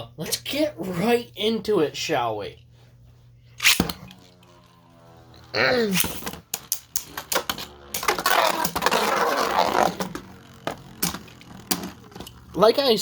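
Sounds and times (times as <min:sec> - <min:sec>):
spinning tops scraping whirr: 0:03.6 - 0:13.0
spinning tops clicking hits: 0:06.0 - 0:08.8.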